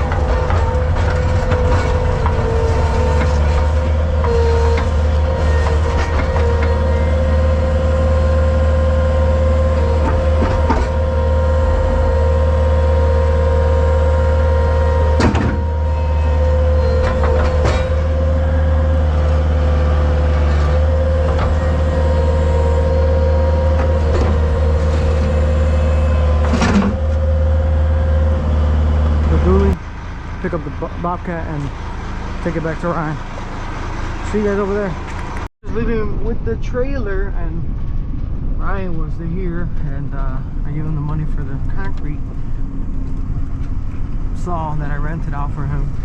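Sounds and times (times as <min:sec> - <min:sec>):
heavy engine whining: 0:00.0 - 0:46.0.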